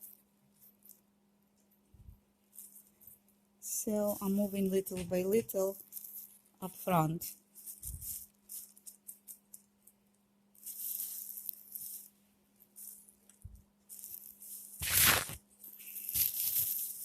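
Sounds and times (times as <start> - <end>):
scratching and rubbing: 10.6 - 17.0.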